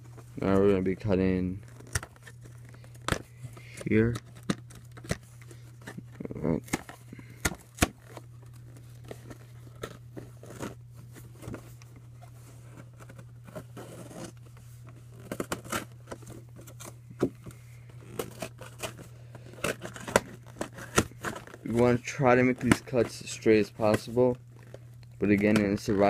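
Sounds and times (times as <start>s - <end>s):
cardboard being cut and torn: 13.5s - 14.3s, 15.2s - 15.9s.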